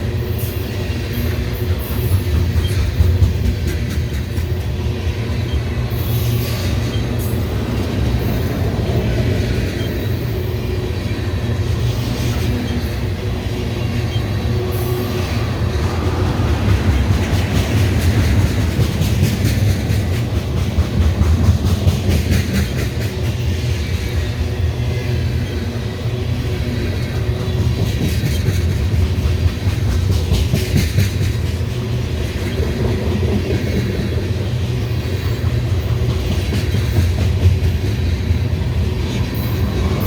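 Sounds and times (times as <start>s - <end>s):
train cars rumbling past: 0.0s - 40.0s
wheels clacking over rail: 11.0s - 24.4s, 26.8s - 40.0s.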